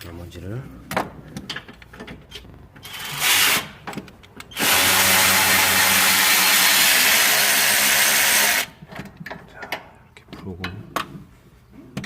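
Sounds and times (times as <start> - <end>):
power wrench running: 2.8 - 3.8, 4.5 - 8.7.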